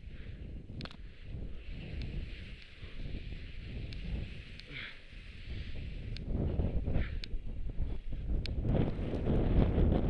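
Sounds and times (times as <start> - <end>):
wind buffeting microphone: 0.0 - 10.0
skis sliding on snow: 1.1 - 6.2.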